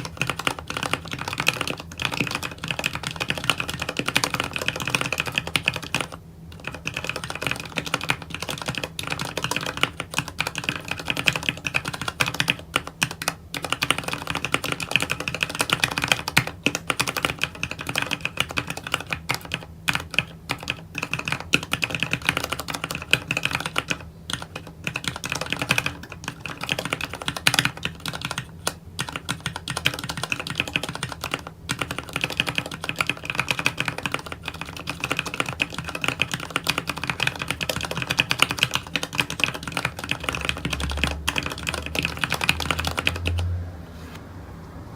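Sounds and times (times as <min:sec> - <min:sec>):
mechanical keyboard typing: 0:00.0 - 0:43.5.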